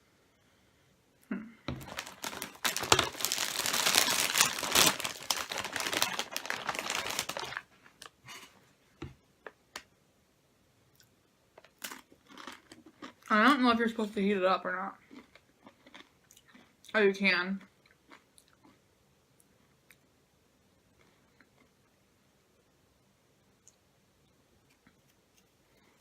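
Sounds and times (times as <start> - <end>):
plastic snack bag crinkling: 1.7 - 8.2.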